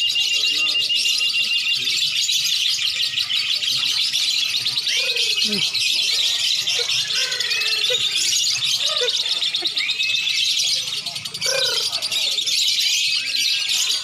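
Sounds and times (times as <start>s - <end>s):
birds chattering: 0.0s - 14.0s.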